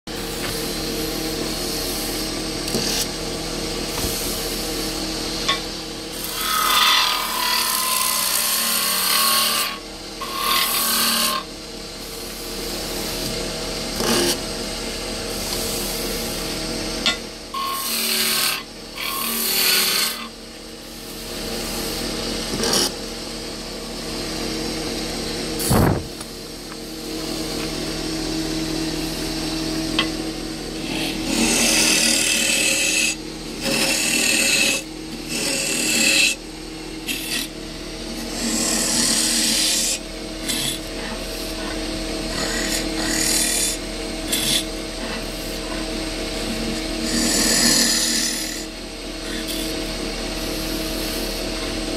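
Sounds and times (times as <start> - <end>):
turning tool scraping wood: 6.1 - 11.5, 38.3 - 45.8, 46.6 - 48.6
wood lathe running: 6.1 - 11.5, 17.6 - 20.3, 29.6 - 36.4, 38.1 - 40.9, 42.3 - 44.6, 46.4 - 51.8.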